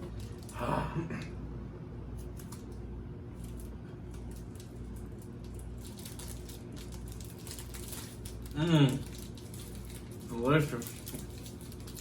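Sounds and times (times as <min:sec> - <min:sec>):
steady low hum: 0:00.0 - 0:12.0
chewing wafer bar crunches: 0:03.4 - 0:12.0.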